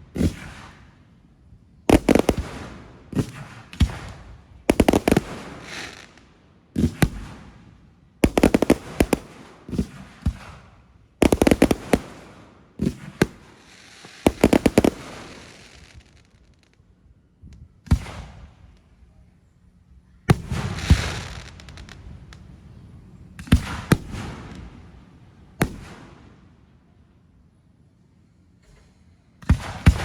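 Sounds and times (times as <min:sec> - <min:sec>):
fireworks crackling hiss: 0:00.0 - 0:01.0, 0:01.9 - 0:16.8, 0:20.3 - 0:22.8
fireworks banging: 0:01.9 - 0:06.2, 0:06.8 - 0:07.6, 0:08.2 - 0:16.4, 0:20.3 - 0:22.4.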